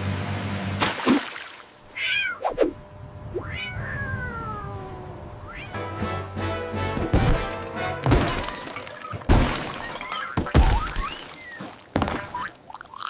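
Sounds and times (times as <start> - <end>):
cartoon orchestral chase music: 5.7 - 8.0
crash and smash impacts: 7.1 - 11.1.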